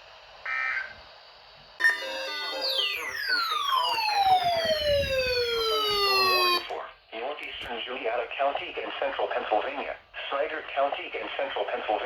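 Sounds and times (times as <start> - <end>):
digital data tone chirp: 1.8 - 4.3
siren winding down: 1.8 - 6.8.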